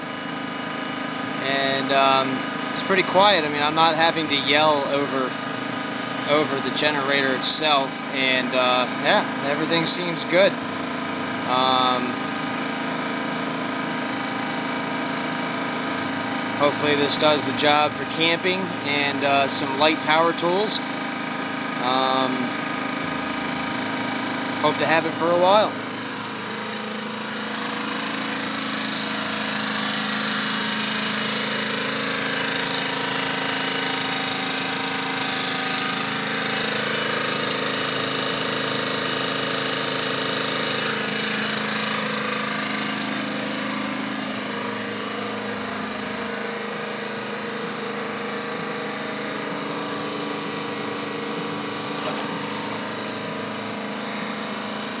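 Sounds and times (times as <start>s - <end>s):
generator engine running: 0.0s - 55.0s.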